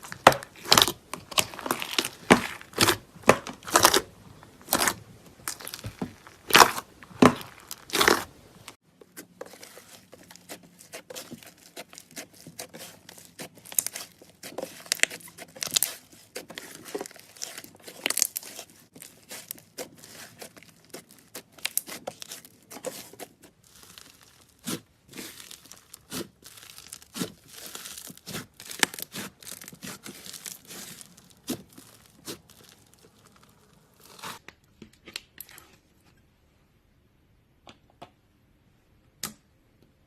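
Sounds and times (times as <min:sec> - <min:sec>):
slime squishing and crackling: 0:00.0 - 0:34.4.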